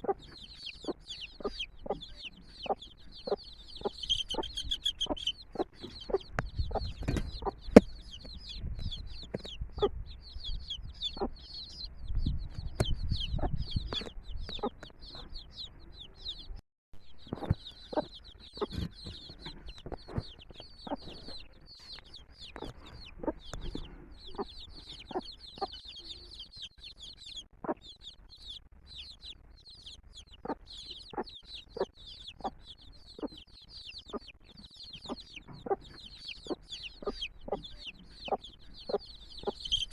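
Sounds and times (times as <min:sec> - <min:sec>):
hen clucking: 0:00.0 - 0:16.5, 0:17.1 - 0:39.9
chicks peeping: 0:00.0 - 0:39.9.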